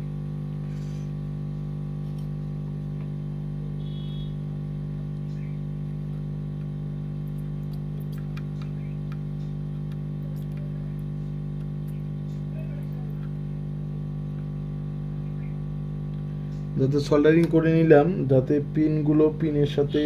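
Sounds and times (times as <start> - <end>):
steady electrical hum: 0.0 - 20.0.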